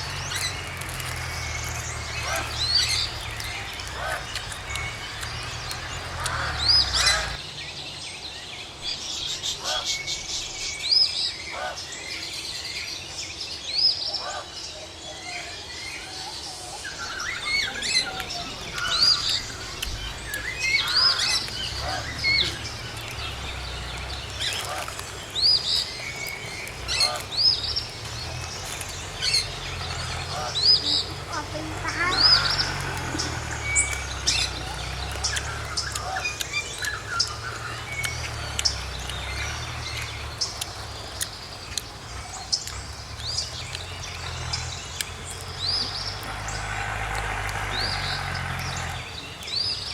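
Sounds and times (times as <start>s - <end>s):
birds chirping: 0.0s - 14.1s, 15.3s - 49.9s
bird trill: 16.9s - 49.9s.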